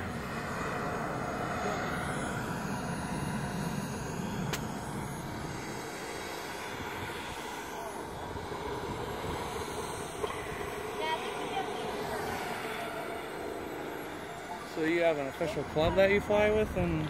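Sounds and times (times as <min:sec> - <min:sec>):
model jet turbine engine running: 0:00.0 - 0:17.0.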